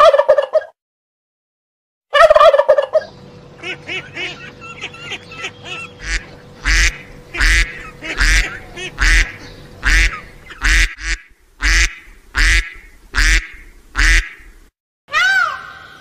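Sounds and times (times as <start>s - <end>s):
duck quacking: 2.2s - 14.6s.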